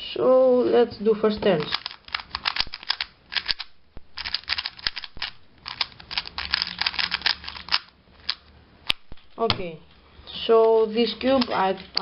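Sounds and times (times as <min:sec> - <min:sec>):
puzzle cube layer turns clicking: 0:01.6 - 0:09.0.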